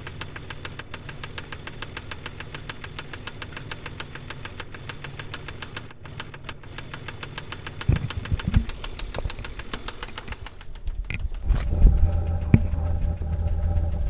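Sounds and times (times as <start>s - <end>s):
car engine running with rapid knock: 0.0s - 14.0s
low thumps: 7.9s - 8.8s, 10.7s - 14.0s.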